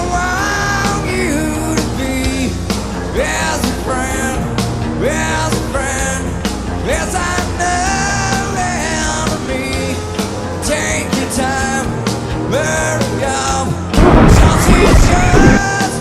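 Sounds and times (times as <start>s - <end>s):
rock band playing: 0.0s - 16.0s
person singing: 12.5s - 16.0s.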